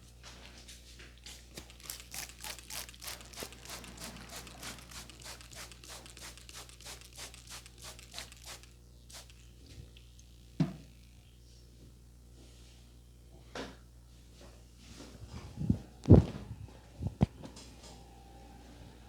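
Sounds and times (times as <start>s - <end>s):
hands rubbing scalp and hair: 1.5s - 9.4s.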